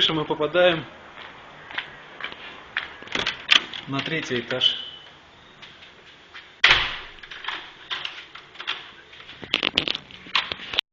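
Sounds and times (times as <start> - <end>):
door banging shut: 3.1 - 4.7, 6.6 - 8.9.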